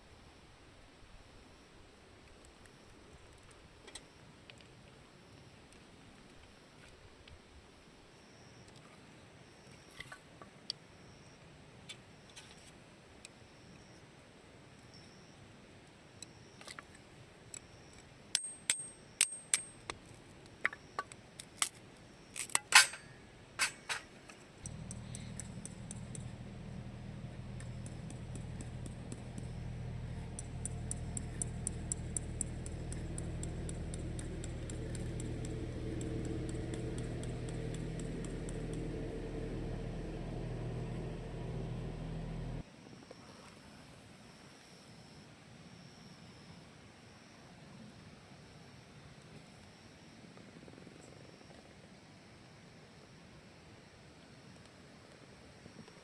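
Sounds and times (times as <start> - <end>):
low mechanical hum: 21.9 - 42.6
sharp clicks and clinks: 22.4 - 42.6
light ticks: 24.6 - 42.6.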